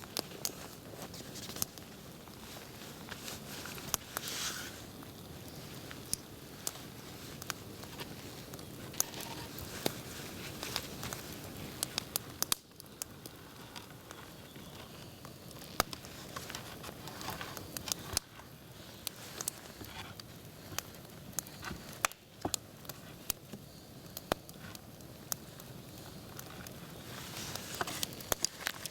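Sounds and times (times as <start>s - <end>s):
campfire crackling and popping: 0.0s - 28.9s.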